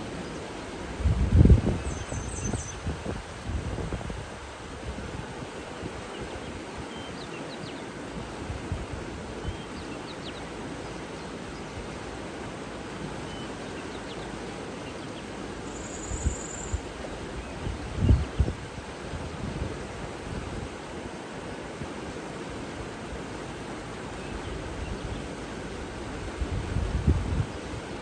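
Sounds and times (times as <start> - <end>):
steady rushing hiss: 0.0 - 28.0
wind bumps on microphone: 1.0 - 5.3, 17.6 - 20.7, 26.4 - 27.6
bird chirps: 1.9 - 2.8, 15.6 - 16.8.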